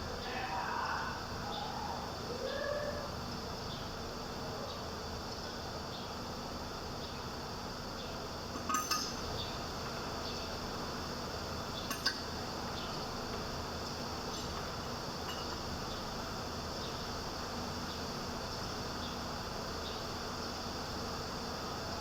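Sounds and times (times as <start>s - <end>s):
steady low hum: 0.0s - 22.0s
short metallic clinks: 8.6s - 9.3s, 11.8s - 12.4s, 15.2s - 15.6s.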